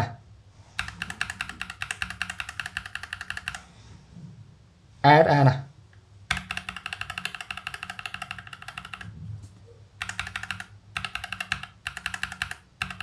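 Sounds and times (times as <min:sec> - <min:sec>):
mechanical keyboard key clacks: 0:06.3 - 0:09.1, 0:10.0 - 0:13.0.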